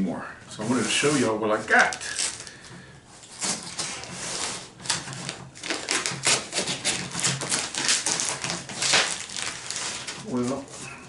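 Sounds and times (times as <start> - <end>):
package being opened: 4.8 - 10.6.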